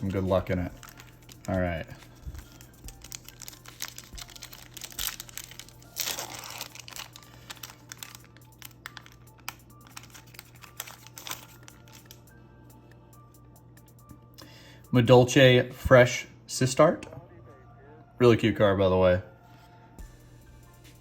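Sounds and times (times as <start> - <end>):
cards clicking and rustling: 0.0 - 12.2
wrapper crinkling and tearing: 0.0 - 12.2.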